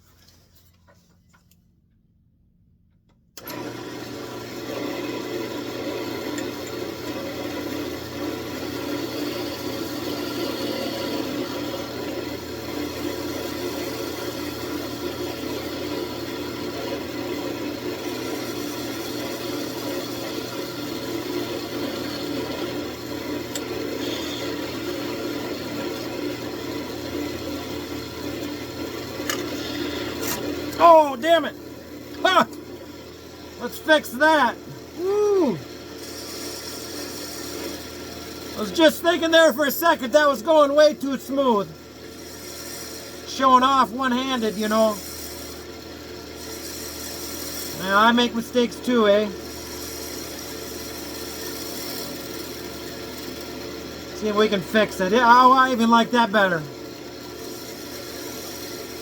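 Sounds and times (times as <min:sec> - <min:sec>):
parting tool cutting wood: 0:03.4 - 0:53.5
spinning workpiece whir: 0:03.4 - 0:59.0
wood lathe motor hum: 0:03.4 - 0:59.0.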